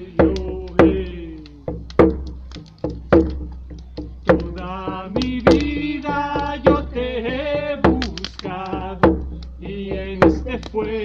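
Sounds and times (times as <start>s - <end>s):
vocable chant singing: 0.0s - 1.8s, 4.2s - 11.0s
slow steady drum beat: 0.0s - 11.0s.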